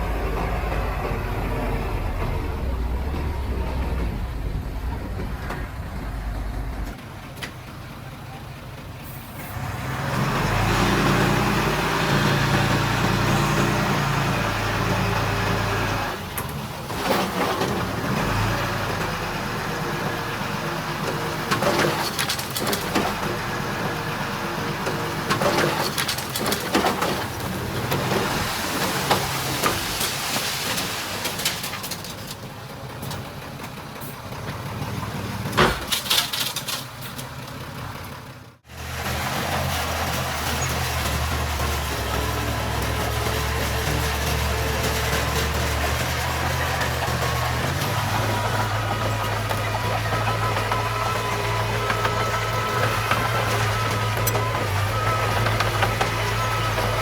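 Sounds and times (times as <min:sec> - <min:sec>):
machinery clanks and knocks: 0:00.0 - 0:07.8, 0:35.4 - 0:37.7, 0:39.6 - 0:57.0
heavy machinery engine running: 0:00.0 - 0:30.0, 0:37.3 - 0:57.0.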